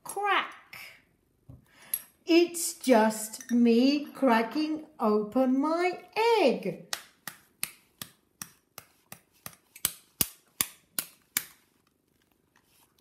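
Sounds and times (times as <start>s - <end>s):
sharp evenly spaced taps: 6.9s - 11.6s.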